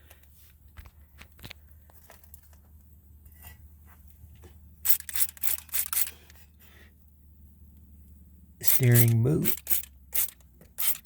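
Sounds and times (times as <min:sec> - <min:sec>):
spray can hissing: 0:08.6 - 0:11.0.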